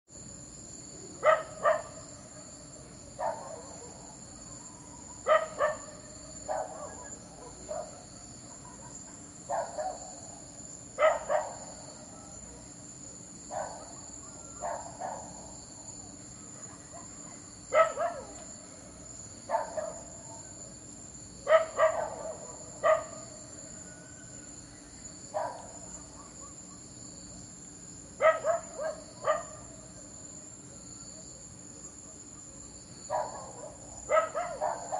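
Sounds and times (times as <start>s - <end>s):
crickets chirring: 0.1s - 34.9s
dog barking: 1.2s - 2.0s, 3.2s - 4.1s, 5.2s - 10.2s, 11.0s - 11.7s, 13.5s - 15.6s, 16.6s - 18.5s, 19.5s - 20.2s, 21.4s - 23.3s, 25.3s - 26.8s, 28.2s - 29.7s, 33.1s - 34.9s.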